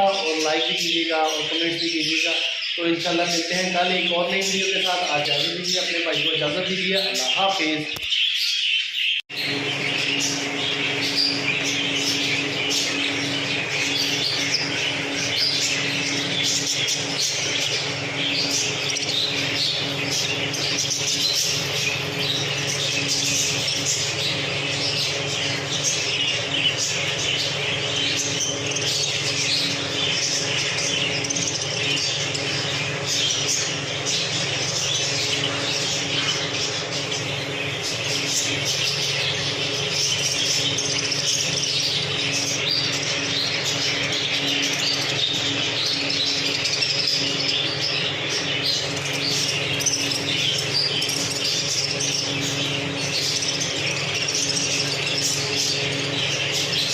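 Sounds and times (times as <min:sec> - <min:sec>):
budgerigars chattering and chirping: 0:00.0 - 0:56.9
steady low hum: 0:09.3 - 0:56.9.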